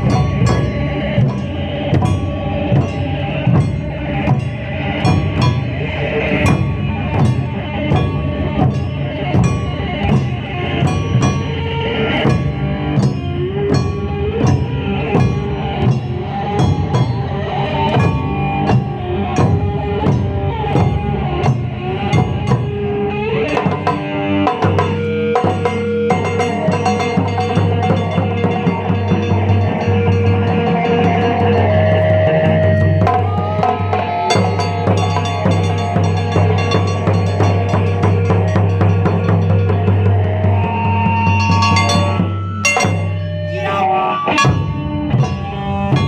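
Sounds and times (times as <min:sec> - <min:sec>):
drum ensemble beat: 0:00.0 - 0:46.0
melody line: 0:41.4 - 0:46.0.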